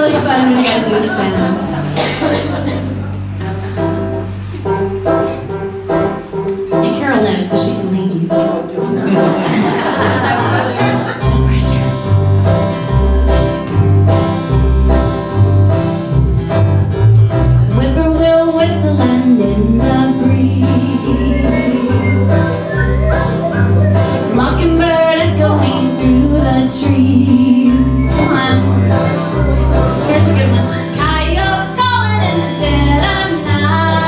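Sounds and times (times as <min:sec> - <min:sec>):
banjo and guitar picking: 0:00.0 - 0:34.0
person singing or humming: 0:19.2 - 0:29.1.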